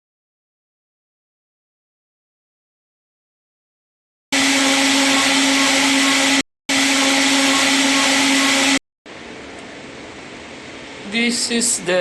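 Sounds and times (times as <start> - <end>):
router spindle motor whine: 4.4 - 8.8.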